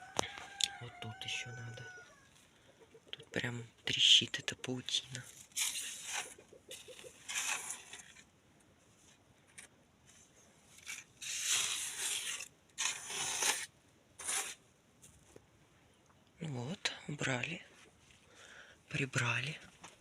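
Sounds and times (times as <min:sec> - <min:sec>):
bristles sweeping scratchily: 0:05.2 - 0:08.2, 0:10.8 - 0:14.6.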